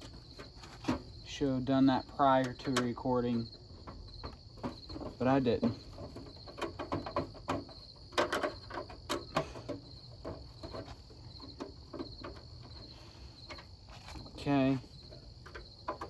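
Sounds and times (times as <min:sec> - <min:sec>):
crickets chirping: 0:00.0 - 0:16.0.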